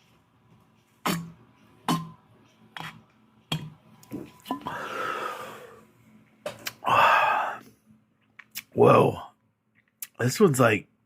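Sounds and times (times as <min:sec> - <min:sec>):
loud exhaled breath: 0:04.6 - 0:05.9, 0:06.8 - 0:07.7.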